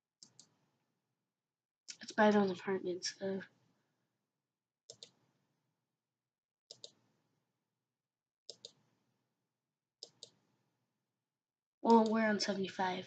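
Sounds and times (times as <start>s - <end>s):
computer mouse clicking: 0.2s - 0.6s, 4.9s - 5.2s, 6.7s - 7.0s, 8.5s - 8.8s, 10.0s - 10.4s, 11.9s - 12.2s.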